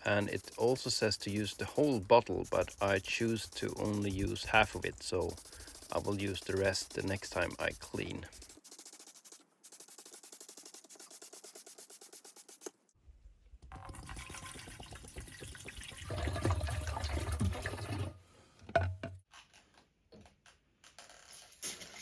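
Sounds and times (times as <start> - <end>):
quick even ticking: 0.0 - 12.5
spray liquid hissing: 0.0 - 12.7.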